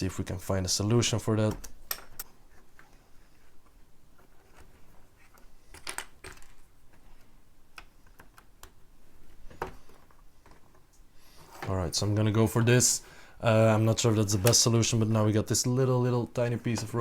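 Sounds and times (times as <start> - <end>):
plastic bricks clicking: 5.7 - 6.7.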